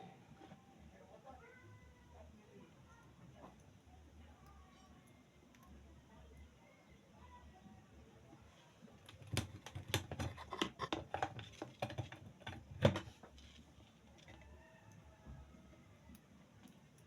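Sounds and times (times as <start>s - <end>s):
light clicks and taps: 16.1s - 17.0s.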